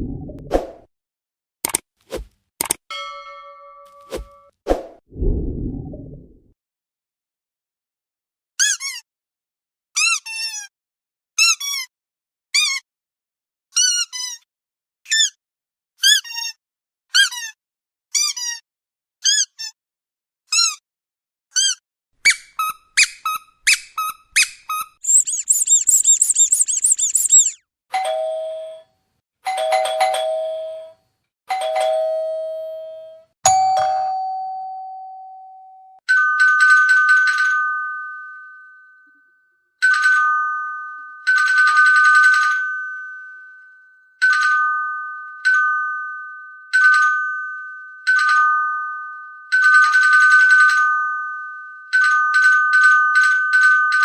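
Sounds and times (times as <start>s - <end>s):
quick high chirps: 22.2s - 27.6s
shrill warbling whistle: 22.3s - 27.6s
two-tone doorbell chime: 29.5s - 39.0s.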